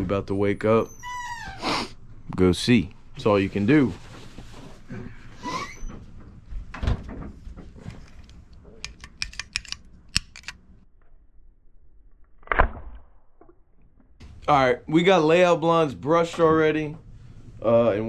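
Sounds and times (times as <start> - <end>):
sharp clicks and knocks: 6.7 - 10.6.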